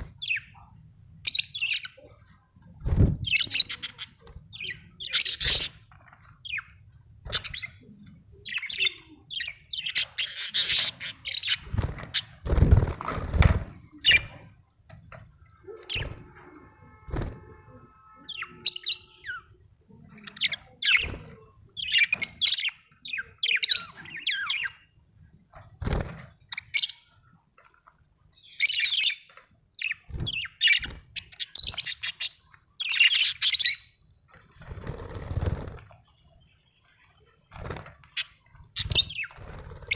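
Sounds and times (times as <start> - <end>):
budgerigars chirping: 8.5 - 12.3.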